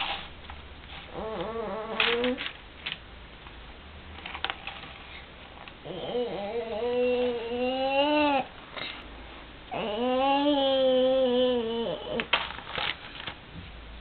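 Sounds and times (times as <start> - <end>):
baby wavering vocal sound: 1.1 - 2.3, 5.8 - 8.5, 9.7 - 12.3.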